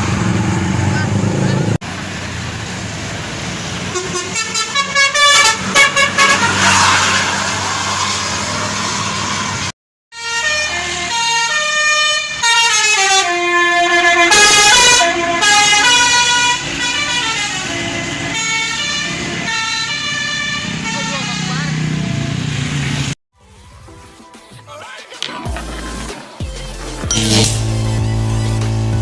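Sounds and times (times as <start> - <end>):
bus horn playing a tune: 3.9 - 6.9, 10.2 - 21.6, 27.2 - 28.3
musical bus horn toots: 3.9 - 6.9, 10.2 - 21.5, 27.1 - 29.0.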